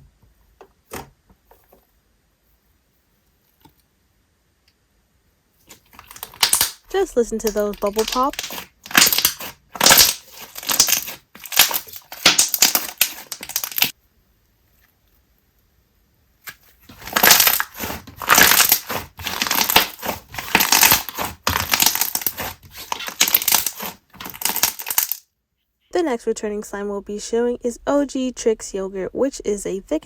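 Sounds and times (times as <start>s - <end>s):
slime squished with crackly pops: 5.7s - 6.8s, 7.4s - 13.9s, 17.0s - 25.2s.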